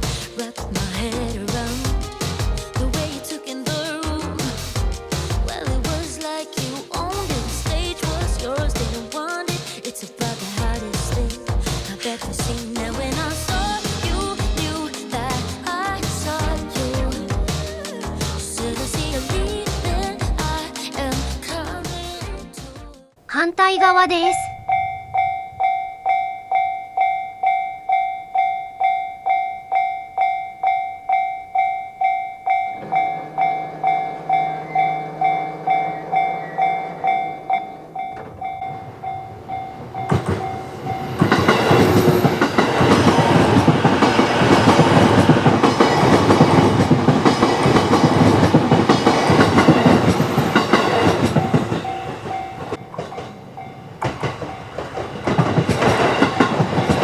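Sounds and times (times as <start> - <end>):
level-crossing alarm ringing: 24.4 - 55.2
train wheels clattering over rails: 39.8 - 57.0.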